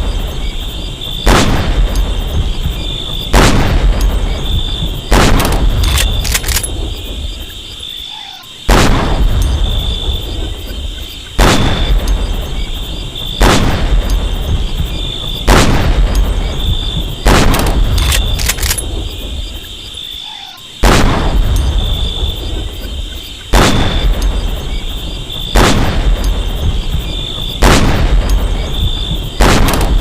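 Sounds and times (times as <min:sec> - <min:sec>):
rifle shots echoing: 0:01.2 - 0:02.0, 0:03.2 - 0:04.2, 0:05.0 - 0:07.3, 0:08.7 - 0:10.3, 0:11.4 - 0:12.5, 0:13.3 - 0:14.3, 0:15.4 - 0:16.6, 0:17.2 - 0:19.4, 0:20.8 - 0:21.5, 0:23.5 - 0:24.4, 0:25.5 - 0:26.4, 0:27.4 - 0:28.7, 0:29.4 - 0:30.0
light clicks: 0:05.4 - 0:06.7, 0:17.5 - 0:18.9.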